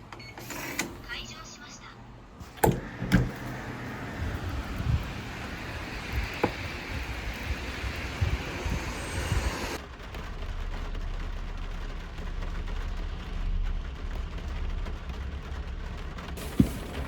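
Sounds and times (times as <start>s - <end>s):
car engine humming: 2.6s - 9.8s
rain falling: 2.8s - 17.0s.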